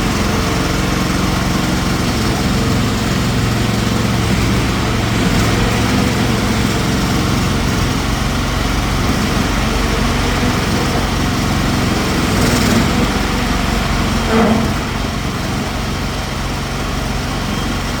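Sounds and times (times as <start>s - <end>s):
small excavator engine running: 0.0s - 18.0s.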